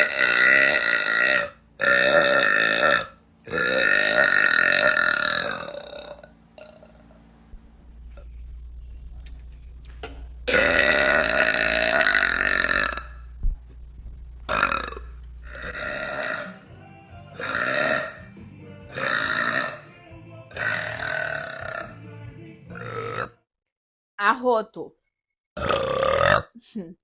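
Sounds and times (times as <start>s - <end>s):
woman burping: 0.0s - 6.9s, 10.5s - 13.2s, 14.5s - 16.6s, 17.4s - 18.2s, 20.6s - 21.9s, 25.6s - 26.6s.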